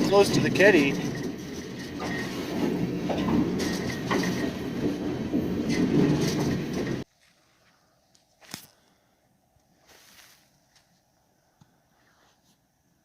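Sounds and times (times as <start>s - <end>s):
wheel squeals: 0.0s - 7.0s
freight train rumbling on track: 0.0s - 7.1s
train clanks and rattles: 0.0s - 7.1s.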